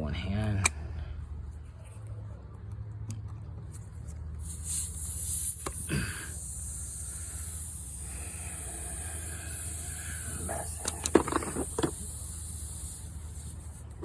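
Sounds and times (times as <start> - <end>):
air hissing from tyre: 4.4 - 14.0.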